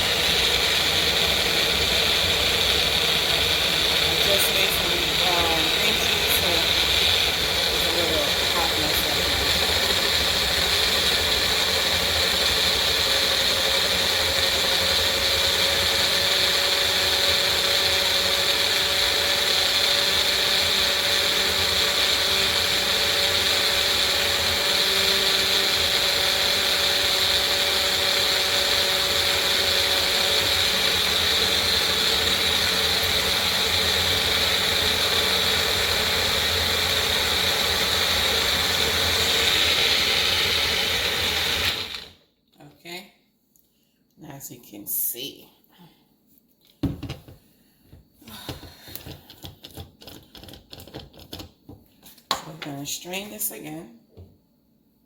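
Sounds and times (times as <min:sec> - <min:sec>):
blender motor running: 0:00.0 - 0:42.2.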